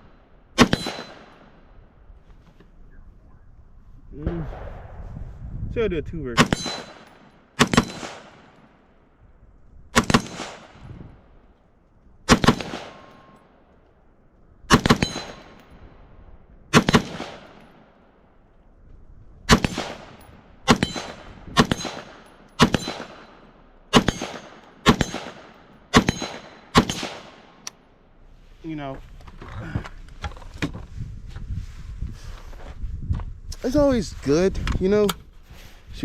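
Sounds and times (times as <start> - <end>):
rifle shots echoing: 0.6 - 1.8, 4.2 - 5.1, 6.4 - 9.2, 9.9 - 11.4, 12.2 - 13.7, 14.7 - 16.0, 16.7 - 18.2, 19.5 - 27.9.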